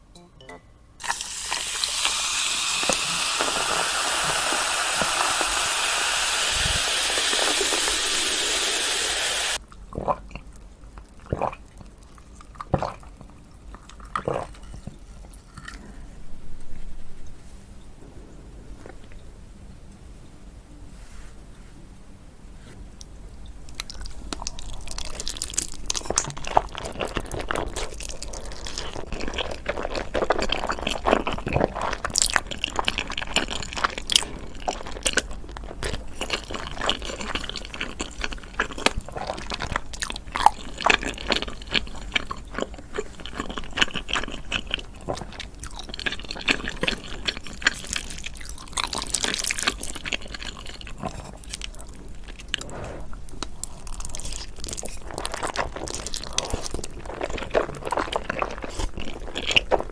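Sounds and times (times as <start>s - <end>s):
chewing and crunching: 9.6s - 16.1s, 23.6s - 59.9s.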